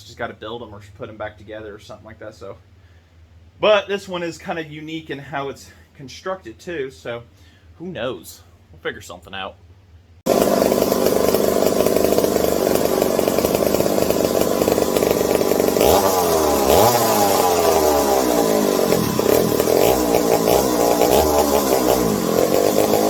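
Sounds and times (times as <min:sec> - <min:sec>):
chainsaw engine revving: 0:10.3 - 0:23.0.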